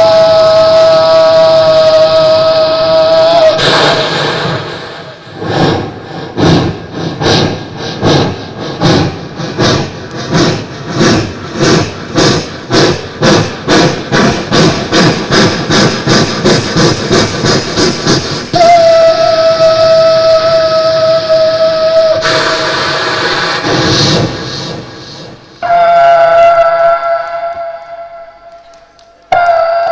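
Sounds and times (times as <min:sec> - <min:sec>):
vocal steam whistle imitation: 0:00.0 - 0:28.6, 0:29.3 - 0:29.9
vocal train chuffing imitation: 0:00.0 - 0:28.6.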